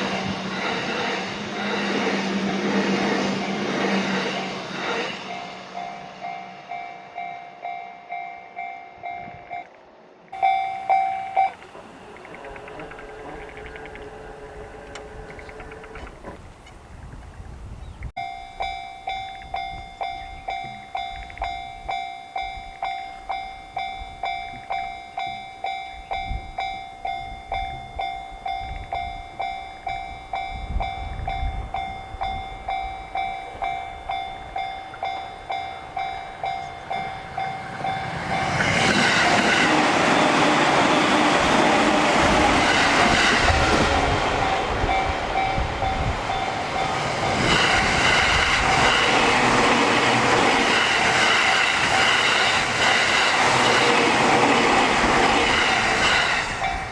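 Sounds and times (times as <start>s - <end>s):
train passing: 0.0s - 56.9s
level crossing bell ringing: 10.4s - 14.2s.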